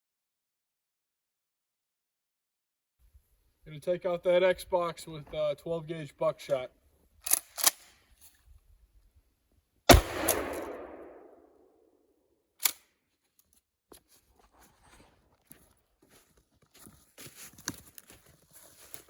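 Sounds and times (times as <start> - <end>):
shotgun blast echoing: 9.9 - 11.5.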